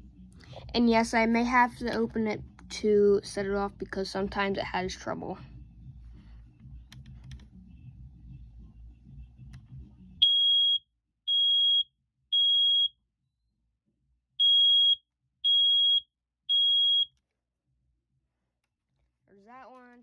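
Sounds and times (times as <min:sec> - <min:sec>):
smoke alarm beeping: 0:10.2 - 0:12.9, 0:14.4 - 0:17.1.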